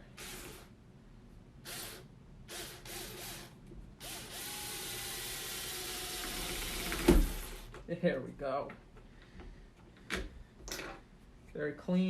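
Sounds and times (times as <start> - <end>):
cordless drill boring into plastic: 1.7 - 7.7.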